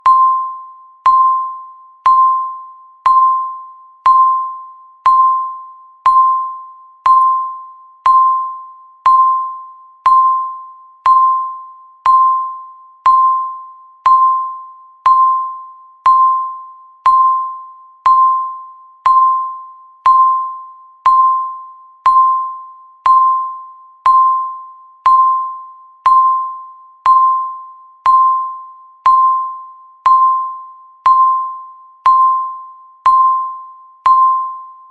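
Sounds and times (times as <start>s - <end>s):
countdown timer beeping: 0.0s - 34.9s.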